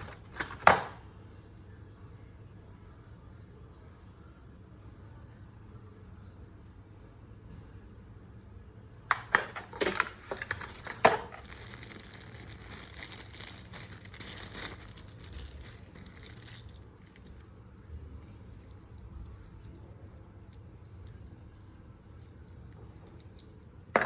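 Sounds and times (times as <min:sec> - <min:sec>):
crinkling and crumpling: 0:00.0 - 0:01.0, 0:09.1 - 0:19.8.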